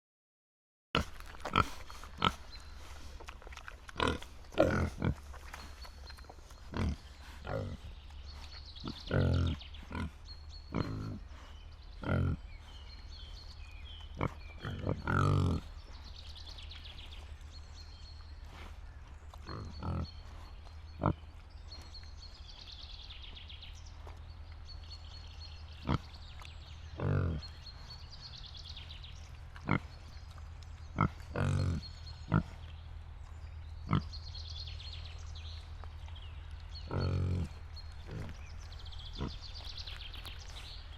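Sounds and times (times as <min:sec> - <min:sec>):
pigs grunting: 0:01.0 - 0:17.2, 0:18.2 - 0:22.0, 0:25.7 - 0:32.9, 0:33.8 - 0:34.2, 0:36.2 - 0:40.9.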